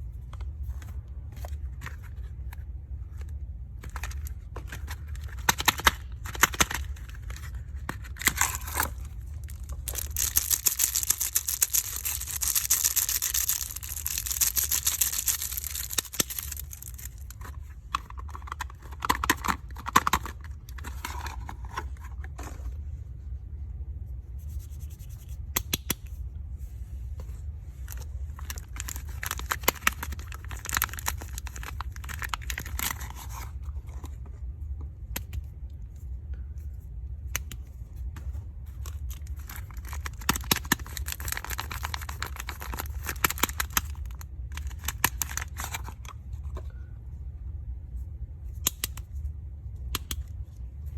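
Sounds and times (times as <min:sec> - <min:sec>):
plastic packaging crinkling: 0:04.0 - 0:17.6, 0:27.9 - 0:33.4, 0:38.9 - 0:46.0.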